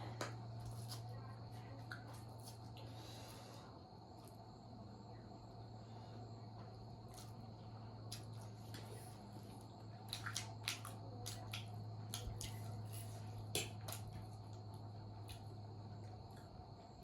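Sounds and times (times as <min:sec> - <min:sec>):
steady low hum: 0:00.0 - 0:17.0.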